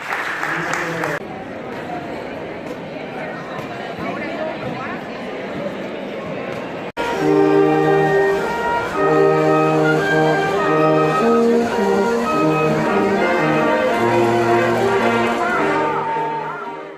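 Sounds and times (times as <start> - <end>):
orchestral music with brass: 7.0 - 16.9.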